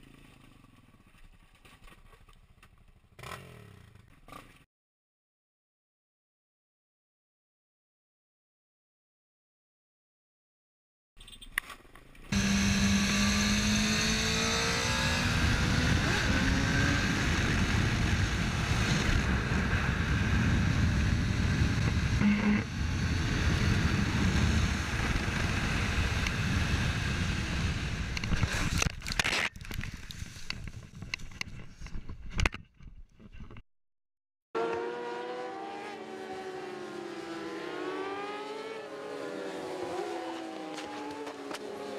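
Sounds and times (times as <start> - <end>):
vehicle engines revving: 12.3 - 28.2, 34.6 - 41.9
wind noise: 12.4 - 33.6.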